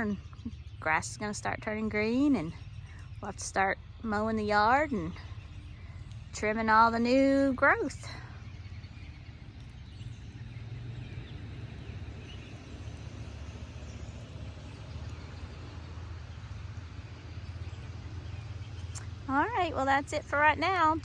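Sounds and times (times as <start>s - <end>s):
low rumble: 0.0s - 21.0s
rainwater rushing down ditch: 7.4s - 21.0s.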